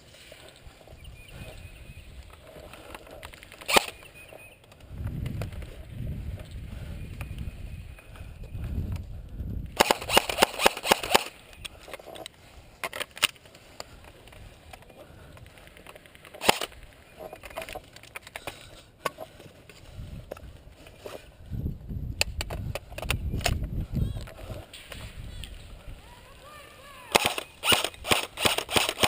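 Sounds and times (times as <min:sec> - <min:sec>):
airsoft guns firing: 0:09.8 - 0:11.4, 0:27.1 - 0:29.0.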